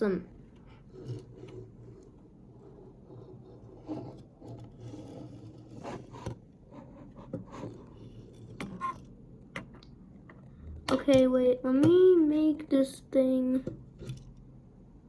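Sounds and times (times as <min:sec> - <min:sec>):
toy scraping and rubbing: 0:00.6 - 0:09.2.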